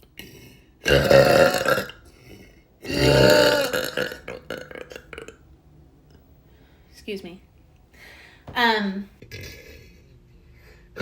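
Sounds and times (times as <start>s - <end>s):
woman burping loudly: 0.8s - 2.1s, 2.8s - 5.4s.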